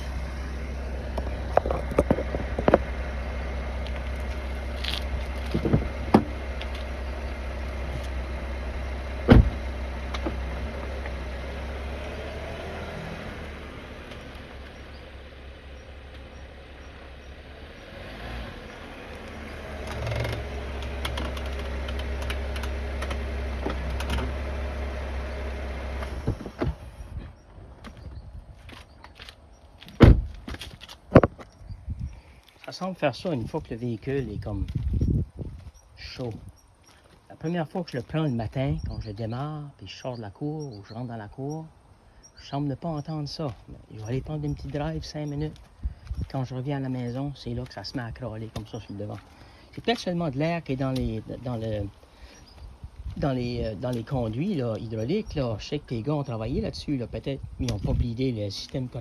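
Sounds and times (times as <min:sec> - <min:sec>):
brakes cracking and knocking: 0:00.0 - 0:12.2, 0:13.7 - 0:24.8, 0:25.9 - 0:31.7, 0:43.4 - 0:55.2
car low rumble: 0:00.0 - 0:59.0.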